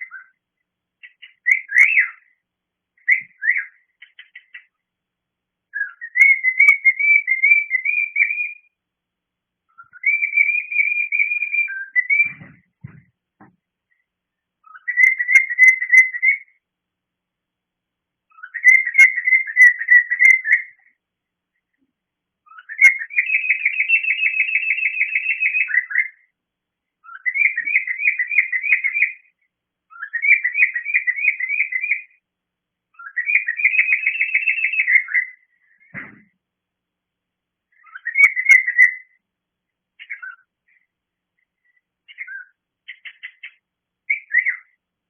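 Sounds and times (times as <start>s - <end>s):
cockatiel whistling: 1.0s - 2.3s, 3.1s - 4.7s, 5.8s - 8.6s, 9.8s - 12.5s, 14.6s - 16.6s, 27.1s - 29.3s, 29.9s - 32.2s, 33.0s - 35.4s, 37.8s - 39.1s, 42.1s - 44.8s.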